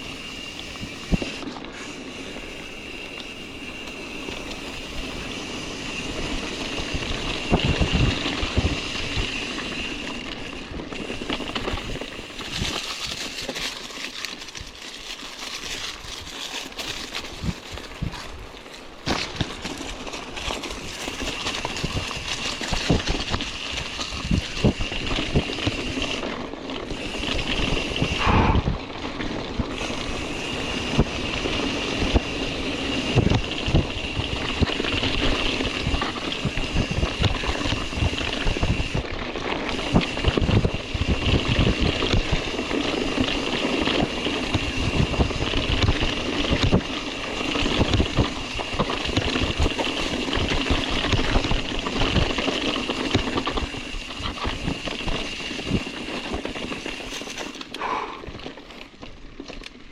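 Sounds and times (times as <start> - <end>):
bike knocking and rattling: 0.0 - 59.9
wind on microphone: 27.7 - 29.0.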